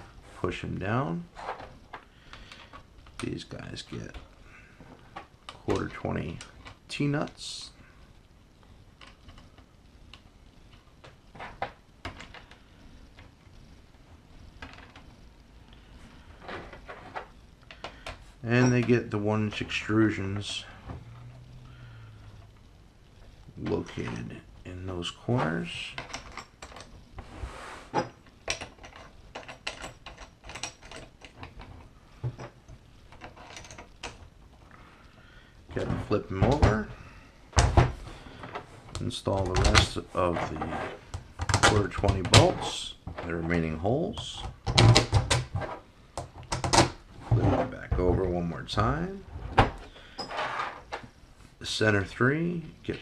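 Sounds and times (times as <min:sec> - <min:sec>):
small metal parts clinking: 0:28.0 - 0:34.3.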